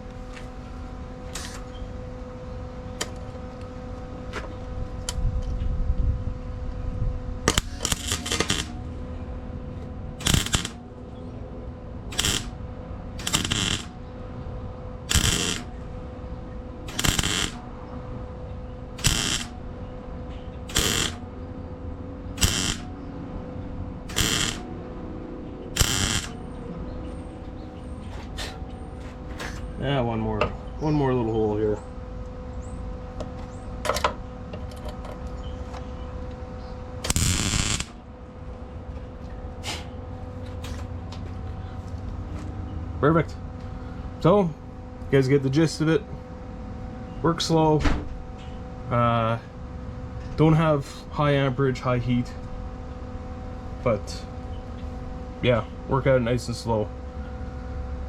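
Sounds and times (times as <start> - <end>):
steady hum: 0.0 - 58.0
welding arc bursts: 1.3 - 1.8, 7.4 - 9.0, 10.2 - 11.0, 12.1 - 14.0, 15.0 - 15.9, 16.8 - 17.8, 18.9 - 19.7, 20.6 - 21.3, 22.3 - 23.0, 24.0 - 24.8, 25.7 - 26.6, 37.0 - 38.1.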